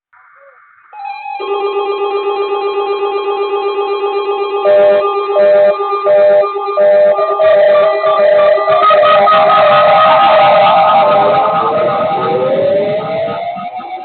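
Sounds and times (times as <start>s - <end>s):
trilling synthesizer tones: 0.0s - 14.0s
guitar music: 0.4s - 14.0s
pulsing electronic beat: 4.0s - 14.0s.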